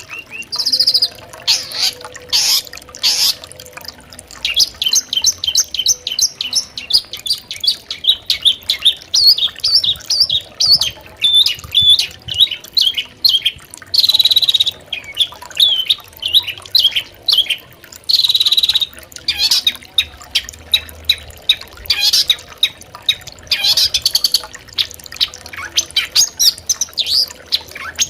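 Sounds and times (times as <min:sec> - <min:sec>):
bird chattering song: 0:00.0 - 0:03.4.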